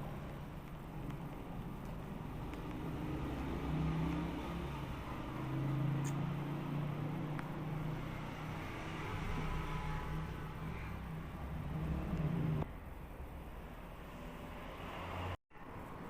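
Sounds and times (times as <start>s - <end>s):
vehicle engine passing: 2.0s - 12.8s, 14.0s - 15.4s.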